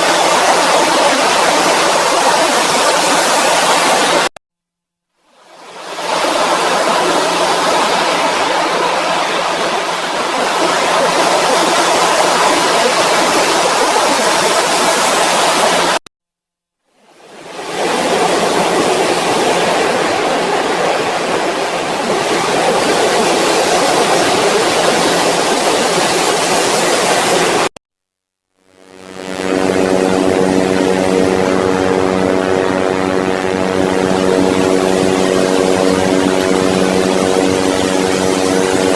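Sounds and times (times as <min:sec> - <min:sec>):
loud rushing static noise: 0:00.0 - 0:04.3, 0:05.4 - 0:16.0, 0:17.1 - 0:27.7.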